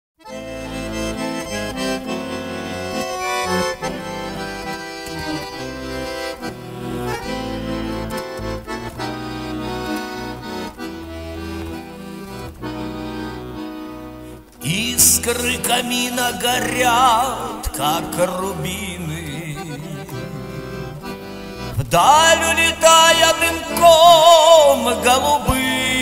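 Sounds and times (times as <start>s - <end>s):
accordion playing a melody: 0.2s - 26.0s.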